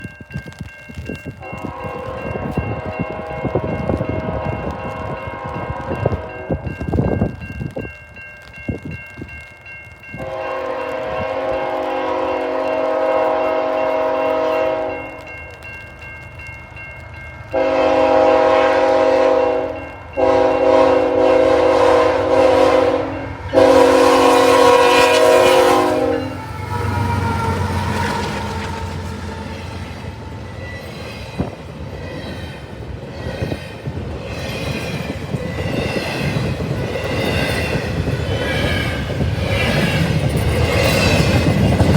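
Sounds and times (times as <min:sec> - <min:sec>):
train rumble: 0:00.0 - 0:41.9
locomotive air horn blasts: 0:01.4 - 0:06.7, 0:10.2 - 0:15.3, 0:17.6 - 0:29.5.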